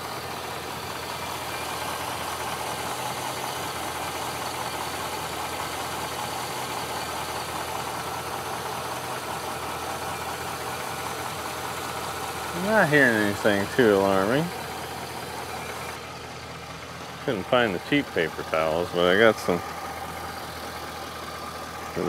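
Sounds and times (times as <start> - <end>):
truck engine idling: 0.0 - 22.0.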